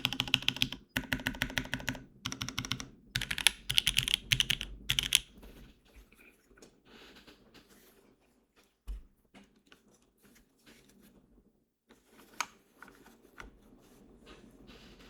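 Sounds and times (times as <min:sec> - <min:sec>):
keyboard keystrokes: 0:00.0 - 0:05.3.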